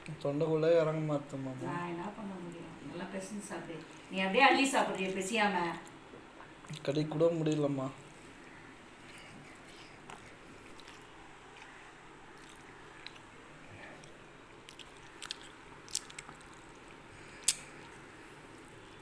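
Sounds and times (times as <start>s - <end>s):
person chewing: 9.0s - 13.3s, 13.9s - 19.0s.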